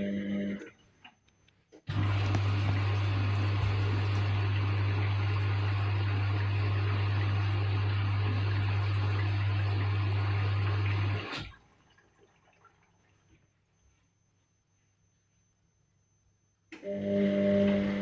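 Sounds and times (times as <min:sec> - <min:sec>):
electrical hum: 0:01.8 - 0:11.5, 0:16.6 - 0:18.0
washing machine water running: 0:01.9 - 0:13.4, 0:16.8 - 0:18.0.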